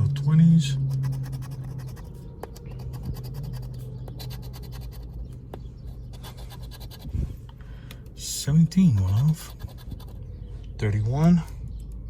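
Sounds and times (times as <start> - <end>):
steady low hum: 0.0 - 12.0
scratching lottery ticket: 0.8 - 7.1, 8.7 - 10.2.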